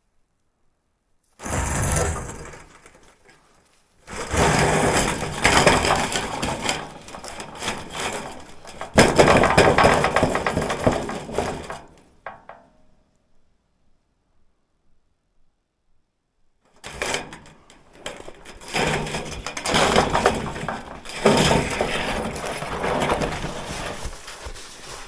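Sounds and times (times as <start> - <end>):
material crunching and scraping: 1.3 - 12.1, 16.8 - 25.0.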